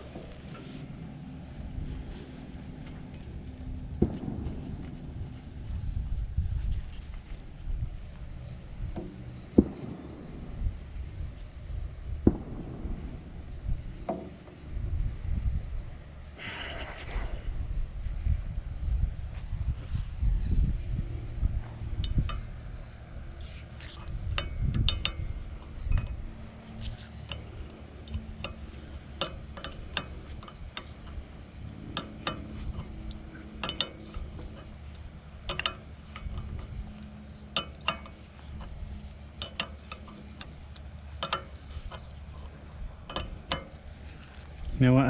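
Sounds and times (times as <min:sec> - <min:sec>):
low hum: 0:00.0 - 0:45.0
hand tools clicking on metal: 0:23.6 - 0:44.8.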